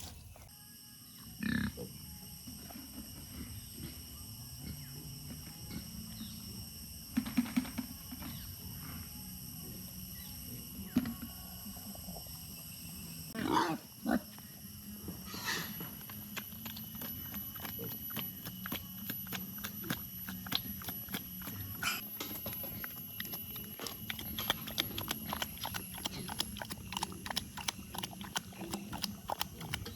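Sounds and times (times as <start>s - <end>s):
pigs grunting: 13.3s - 14.3s, 15.2s - 29.9s
pig squealing: 21.7s - 22.1s.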